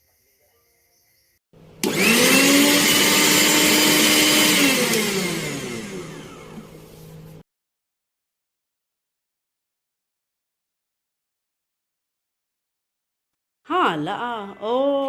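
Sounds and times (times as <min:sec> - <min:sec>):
mixer grinder motor whining: 0:01.7 - 0:07.4.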